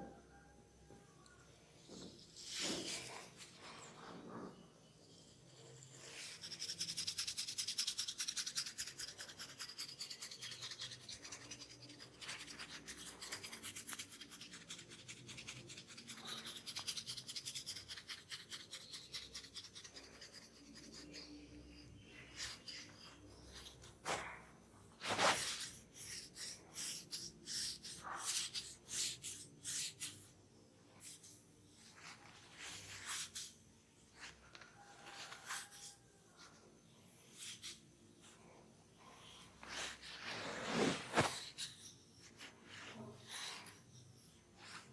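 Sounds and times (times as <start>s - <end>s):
hands rubbing hair: 39.3s - 41.7s.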